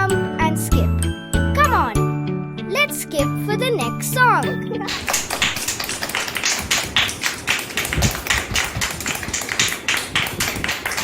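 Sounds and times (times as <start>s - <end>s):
children clapping: 4.8s - 11.0s.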